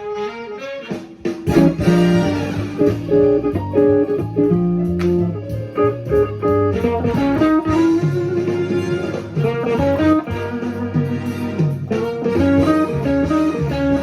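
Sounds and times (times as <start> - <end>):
electric guitar playing jazz: 0.0 - 14.0.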